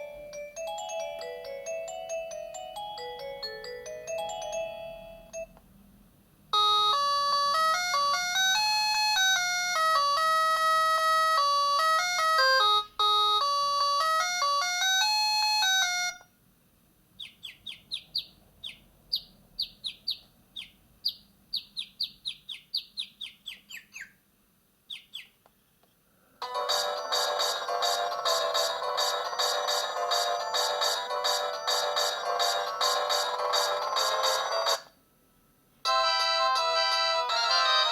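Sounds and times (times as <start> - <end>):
electronic ringtone melody: 0.0 - 5.5, 6.6 - 16.2, 26.4 - 34.9, 35.9 - 37.9.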